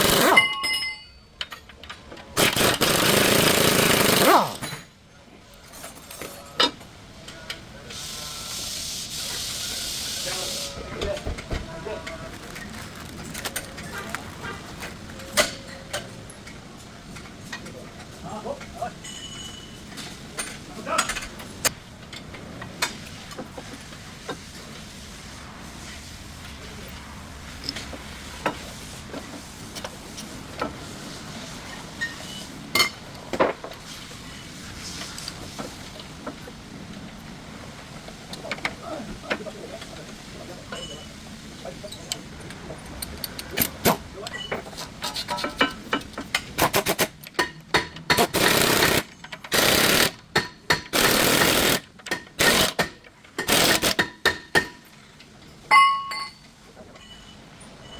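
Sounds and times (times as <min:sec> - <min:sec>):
metallic clinks of hand tools: 0:00.2 - 0:01.8, 0:55.7 - 0:57.4
impact tool hammering: 0:49.6 - 0:54.9
ringing tone: 0:55.7 - 0:56.4.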